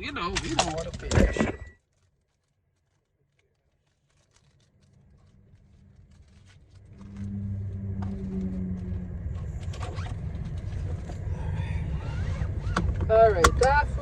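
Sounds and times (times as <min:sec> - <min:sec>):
car engine drone inside cabin: 0:04.3 - 0:14.0.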